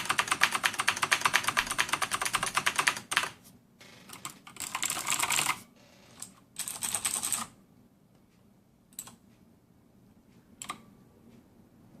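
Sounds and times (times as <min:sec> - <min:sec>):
typing on mechanical keyboard: 0:00.0 - 0:03.4, 0:04.1 - 0:05.6, 0:06.2 - 0:07.6.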